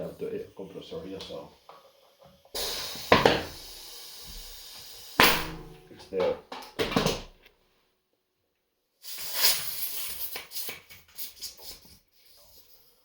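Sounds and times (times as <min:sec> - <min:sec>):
compressed air hissing through valve: 0:00.0 - 0:05.8, 0:09.0 - 0:13.0.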